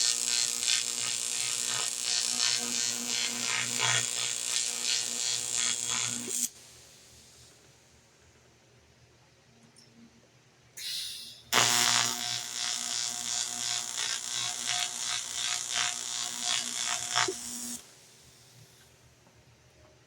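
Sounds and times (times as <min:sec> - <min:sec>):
welding arc buzzing hiss: 0:00.0 - 0:07.6, 0:10.8 - 0:19.1.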